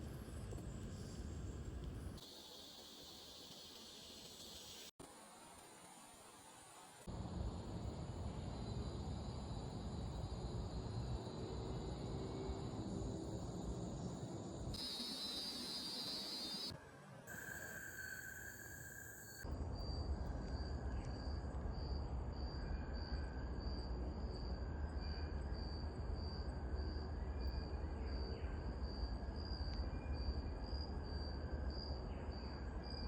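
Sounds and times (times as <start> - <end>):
insects chirping: 8.5 - 16.7, 17.3 - 33.0.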